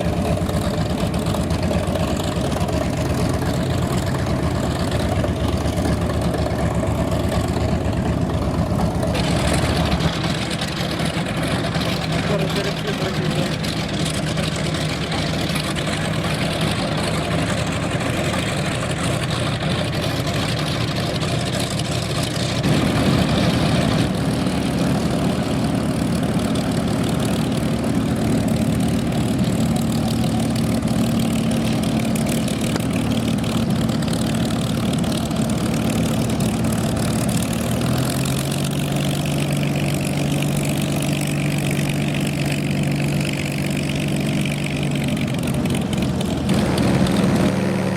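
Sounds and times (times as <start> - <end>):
piston aircraft engines running: 0.0 - 47.9.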